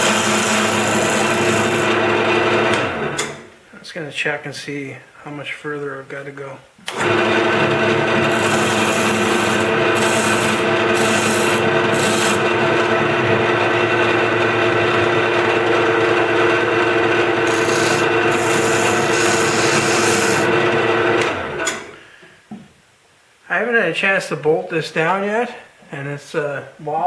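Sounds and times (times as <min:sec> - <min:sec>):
chisel scraping wood: 0:00.0 - 0:02.0, 0:08.1 - 0:13.4, 0:17.4 - 0:20.8
lathe motor hum: 0:00.0 - 0:03.4, 0:06.9 - 0:21.9
lathe shutting off: 0:00.0 - 0:03.4, 0:06.9 - 0:22.0.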